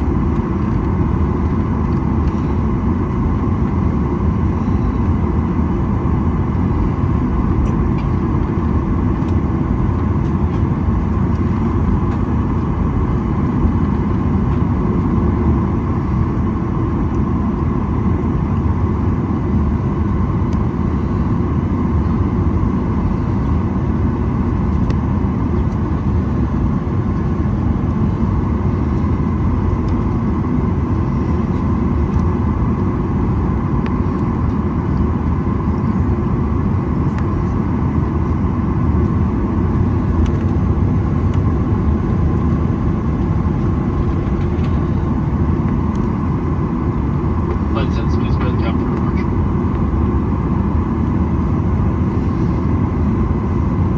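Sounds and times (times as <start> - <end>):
jet engines running at low power: 0.0 - 53.9
air-conditioning hiss: 38.9 - 53.9.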